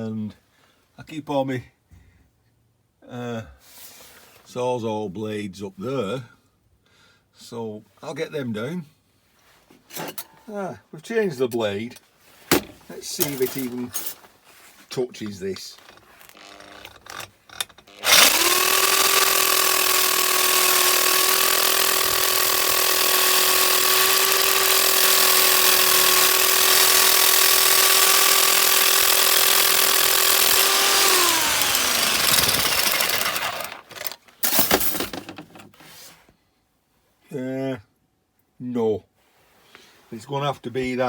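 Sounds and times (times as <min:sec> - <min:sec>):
reciprocating saw cutting: 0:18.0 - 0:34.2.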